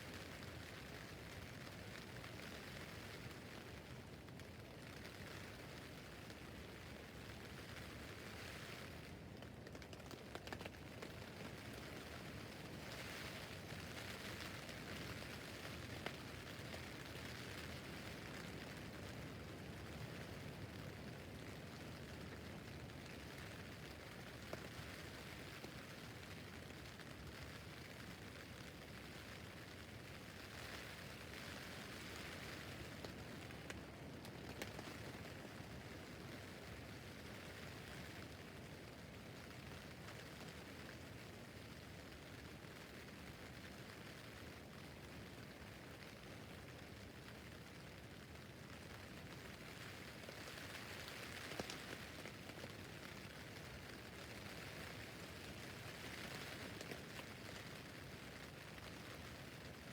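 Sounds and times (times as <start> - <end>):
rain pattering on a tent roof: 0.0 - 59.9
raindrop ticks: 9.4 - 18.6, 31.4 - 35.8, 48.8 - 57.8.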